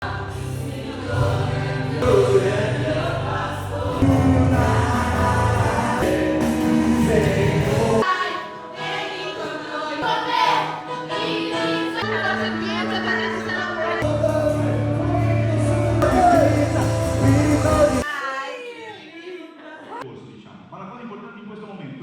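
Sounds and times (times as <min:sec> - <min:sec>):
group singing worship music: 0:00.0 - 0:18.2
band playing: 0:01.1 - 0:08.1, 0:12.0 - 0:18.0.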